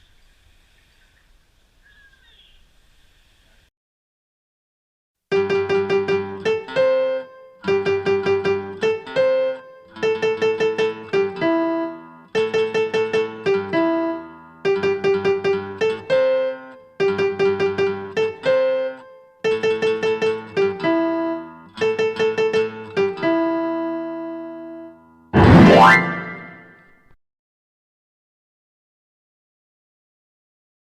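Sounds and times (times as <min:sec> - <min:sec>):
repeated instrumental melodic phrase: 0:05.3 - 0:26.8.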